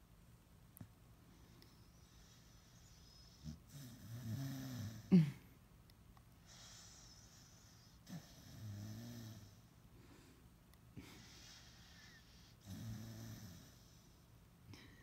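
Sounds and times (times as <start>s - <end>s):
breathy hiss: 1.3s - 5.2s, 6.4s - 15.0s
dog snoring: 1.8s - 5.1s, 6.4s - 9.6s, 11.2s - 14.1s.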